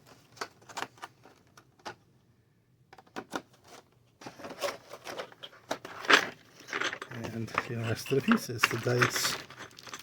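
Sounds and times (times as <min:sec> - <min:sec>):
board game pieces clicking: 0:06.1 - 0:10.0.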